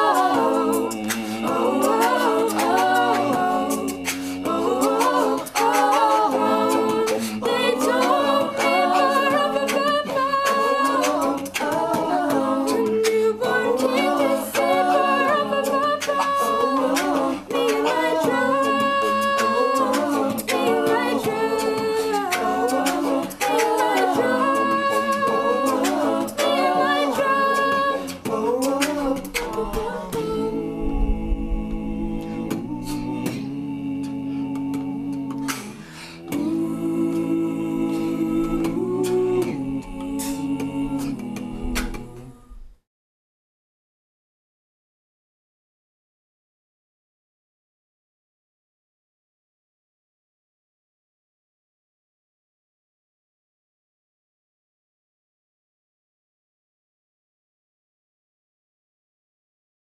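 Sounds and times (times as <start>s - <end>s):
vocal group singing harmony: 0.0s - 42.8s.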